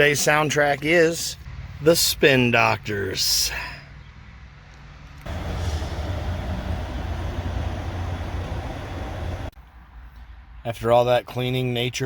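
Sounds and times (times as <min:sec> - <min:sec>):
car vacuum suction rushing: 0:05.3 - 0:09.6
low motor hum: 0:05.3 - 0:09.6.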